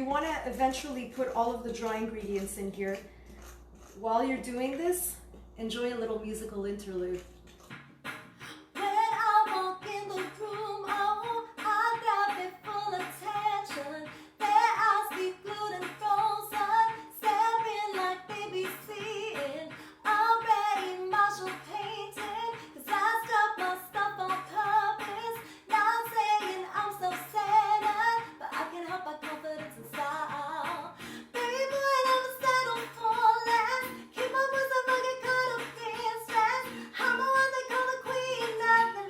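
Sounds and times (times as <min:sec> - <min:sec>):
woman singing: 0:08.4 - 0:39.0.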